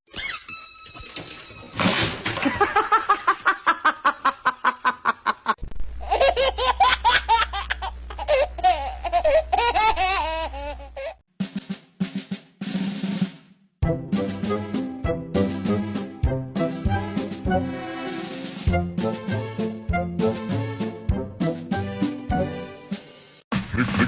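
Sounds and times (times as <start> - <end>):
laughter in rhythmic bursts: 2.4 - 10.2
high wavering laughter: 2.4 - 11.1.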